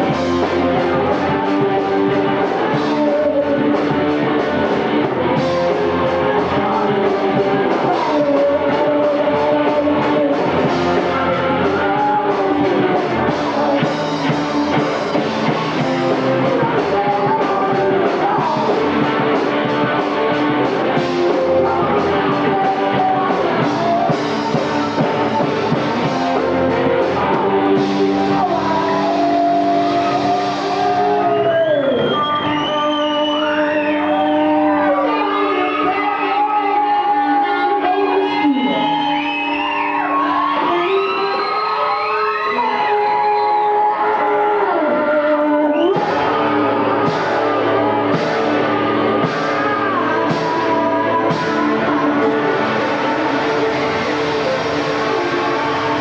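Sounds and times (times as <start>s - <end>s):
drum kit beat: 0.0s - 32.5s, 45.9s - 56.0s
electric guitar: 0.0s - 56.0s.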